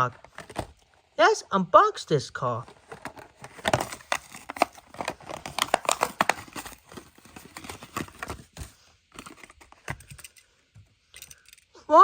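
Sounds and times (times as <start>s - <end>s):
plastic and cardboard crackling: 0.0s - 1.0s, 2.6s - 10.2s.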